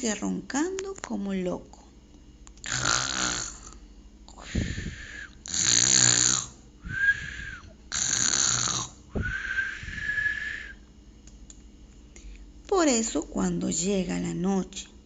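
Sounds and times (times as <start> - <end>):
person imitating snoring: 2.6 - 3.8, 4.4 - 9.0
whistling out-breath: 4.4 - 5.4, 6.8 - 7.8, 9.1 - 10.8.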